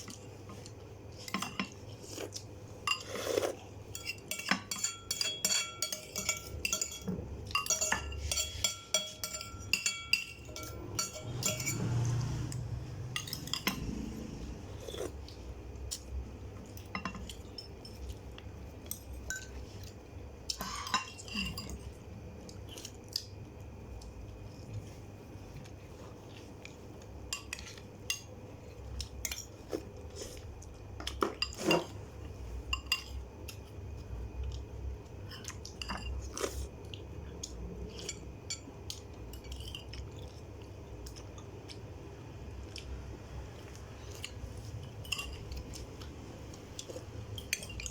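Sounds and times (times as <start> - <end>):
cutlery clinking against dishes: 2.9 - 12.2.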